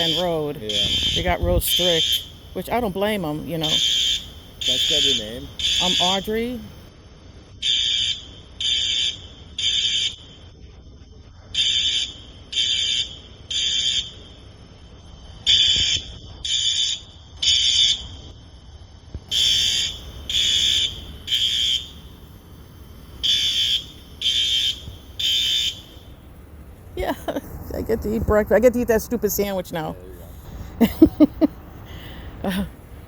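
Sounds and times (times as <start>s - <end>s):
fire alarm beeping: 0.0s - 6.9s, 7.6s - 10.5s, 11.6s - 18.3s, 19.3s - 26.3s, 27.0s - 32.7s.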